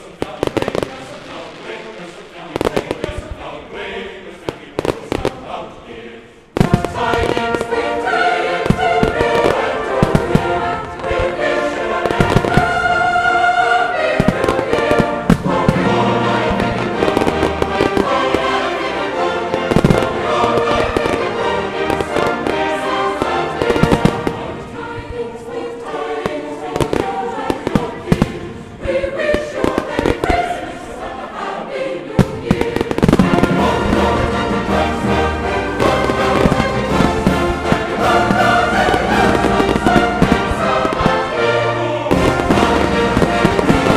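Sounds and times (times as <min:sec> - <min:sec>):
choral show music: 0:00.0 - 0:43.9
fireworks bursting and crackling: 0:00.0 - 0:43.9.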